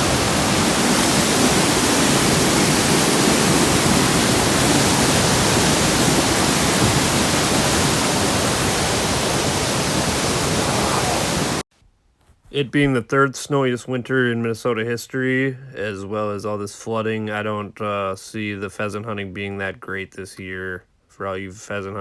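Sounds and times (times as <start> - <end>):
river rushing over a dam: 0.0 - 11.6.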